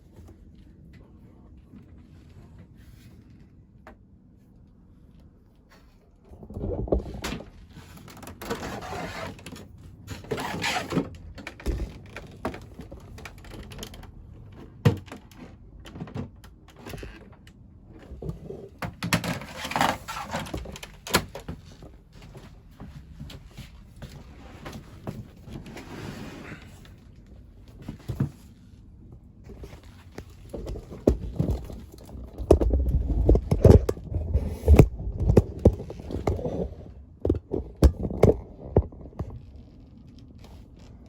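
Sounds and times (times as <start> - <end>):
plastic and metal parts clunking: 6.6 - 21.9.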